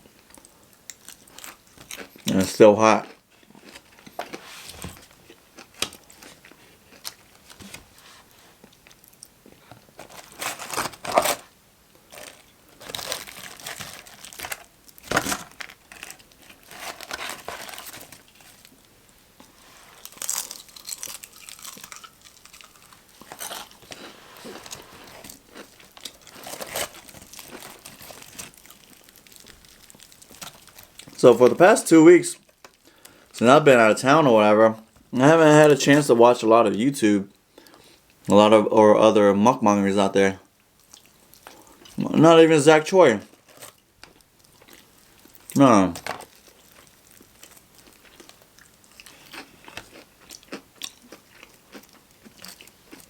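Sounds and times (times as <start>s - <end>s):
crunching fried chicken: 0.1s - 8.0s, 8.7s - 33.3s, 43.2s - 53.0s
chewing: 19.4s - 31.2s, 46.2s - 53.0s.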